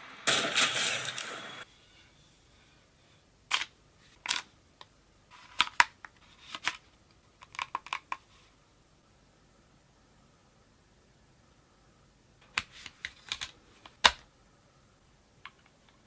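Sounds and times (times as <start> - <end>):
loud burst of noise: 0.0 - 1.6.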